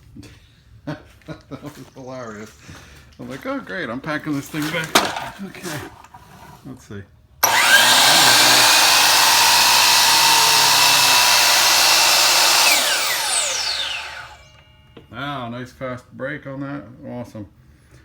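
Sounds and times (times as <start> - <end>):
miter saw motor whining: 7.4 - 14.7.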